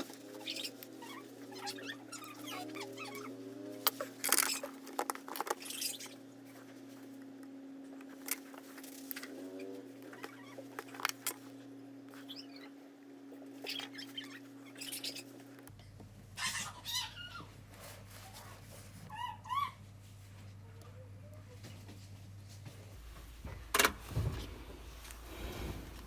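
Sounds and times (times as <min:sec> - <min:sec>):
steady low hum: 0:00.0 - 0:26.0
bird chirping: 0:13.6 - 0:15.3.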